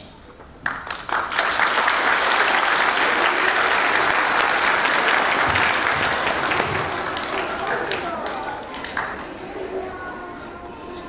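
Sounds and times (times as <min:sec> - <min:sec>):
children applauding: 0:00.6 - 0:09.4.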